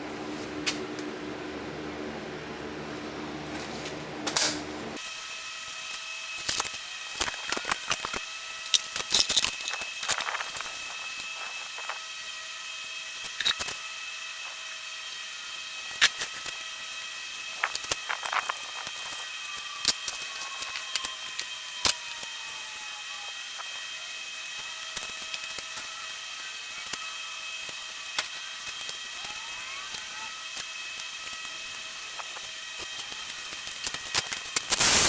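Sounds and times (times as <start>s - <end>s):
low background hum: 0.0s - 5.0s
hand tools and metal parts clinking: 6.4s - 12.1s, 13.2s - 13.8s, 17.5s - 22.0s, 32.1s - 35.0s.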